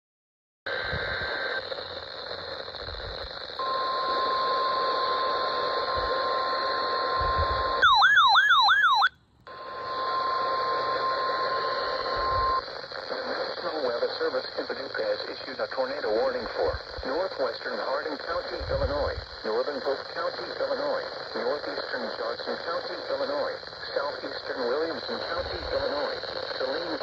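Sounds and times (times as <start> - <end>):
radio receiver static: 0.7 - 27.0
steady alarm tone: 3.6 - 12.6
warbling siren-like alert: 7.4 - 9.1.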